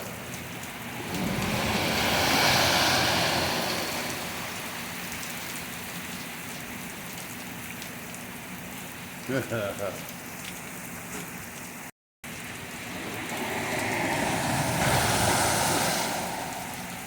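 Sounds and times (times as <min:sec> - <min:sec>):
car splashing through water: 0:00.0 - 0:07.6, 0:12.4 - 0:17.0
heavy rain on ground: 0:00.0 - 0:17.0.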